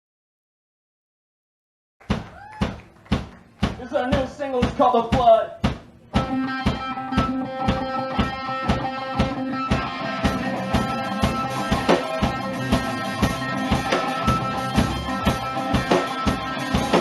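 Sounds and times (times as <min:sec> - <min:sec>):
drum kit playing: 0:02.0 - 0:17.0
electric guitar: 0:06.1 - 0:17.0.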